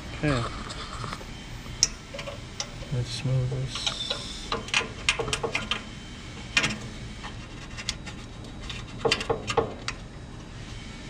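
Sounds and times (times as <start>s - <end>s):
grill parts clinking: 1.8s - 10.1s.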